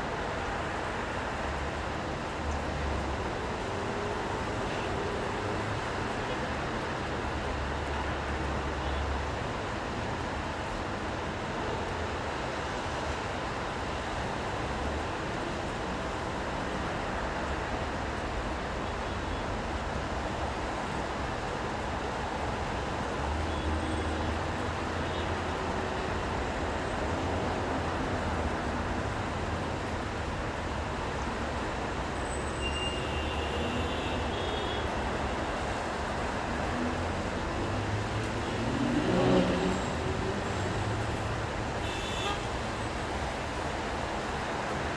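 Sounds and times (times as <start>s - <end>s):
tyres hissing on wet road: 0.0s - 44.9s
passing vehicles rumbling: 34.9s - 44.9s.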